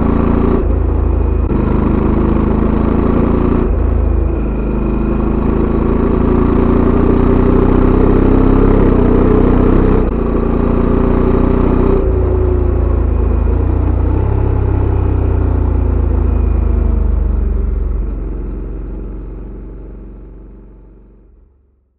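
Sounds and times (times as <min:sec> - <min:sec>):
motorcycle engine exhaust: 0:00.0 - 0:21.7.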